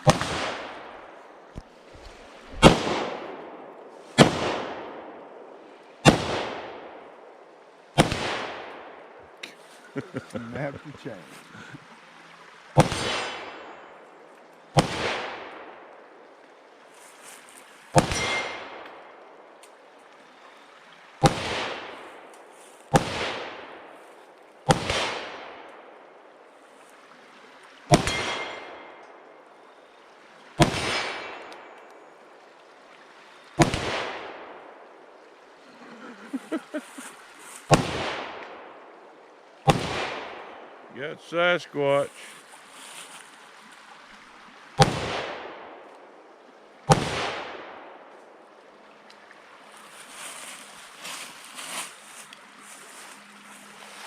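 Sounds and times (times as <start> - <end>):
gunshots with echo: 0.0 - 1.0, 2.6 - 5.2, 6.0 - 7.0, 8.0 - 8.9, 12.8 - 13.7, 14.8 - 15.8, 21.2 - 22.0, 22.9 - 23.8, 24.7 - 25.6, 30.6 - 31.5, 33.6 - 34.6, 37.7 - 38.5, 39.7 - 40.6, 46.9 - 47.9.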